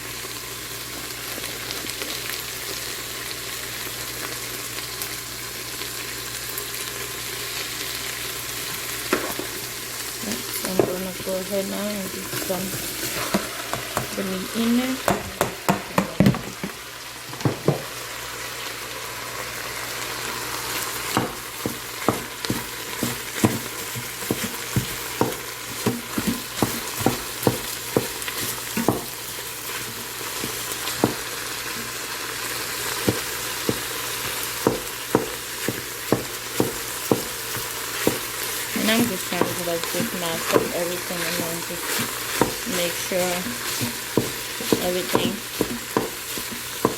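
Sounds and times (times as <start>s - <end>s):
meat sizzling: 0.0s - 46.9s
utensil knocking and scraping pot: 12.2s - 14.2s, 15.0s - 17.9s, 21.1s - 31.2s, 33.0s - 46.9s.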